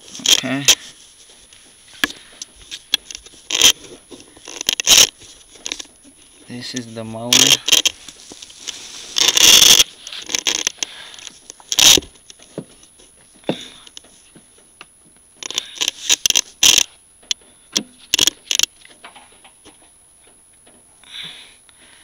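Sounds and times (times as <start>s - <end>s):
handling scrapes and clicks: 2.0s - 5.9s, 6.7s - 13.1s, 15.4s - 17.4s.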